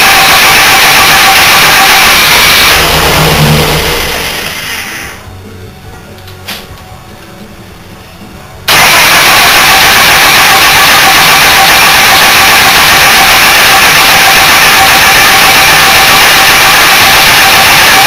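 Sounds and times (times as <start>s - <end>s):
engine running loud: 0.0s - 5.1s
engine turning over: 0.0s - 5.2s.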